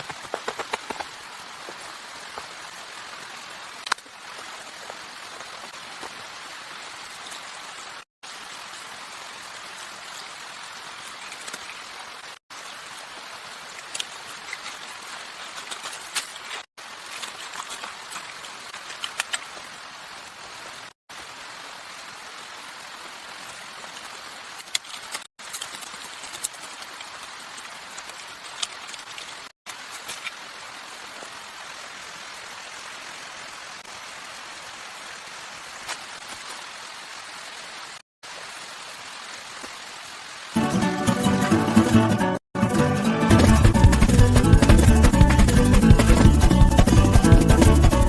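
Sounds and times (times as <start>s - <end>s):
steady rain falling: 0.0s - 48.0s
plucked string music: 40.6s - 48.0s.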